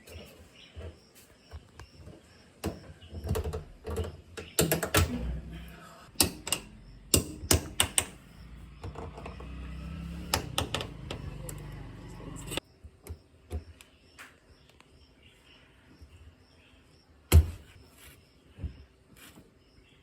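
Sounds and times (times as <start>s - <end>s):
hands clicking and knocking on rubber gasket: 1.5s - 5.2s, 6.2s - 8.2s
low hum: 5.0s - 12.6s.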